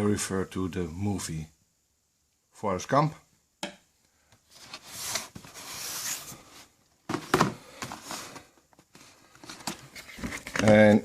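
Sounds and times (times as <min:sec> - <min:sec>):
shoebox and paper rustling: 0:04.5 - 0:11.0.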